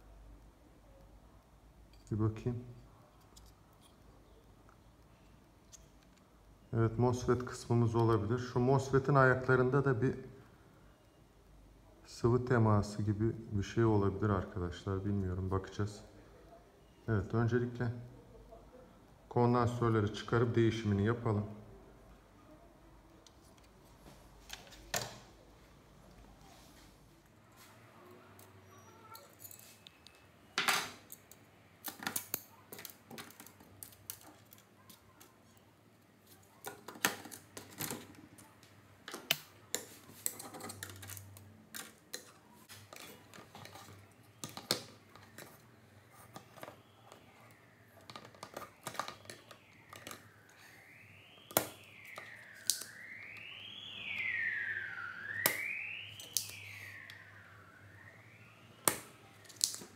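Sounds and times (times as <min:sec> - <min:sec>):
tone sweeping up and down: 0:49.5 - 0:59.9.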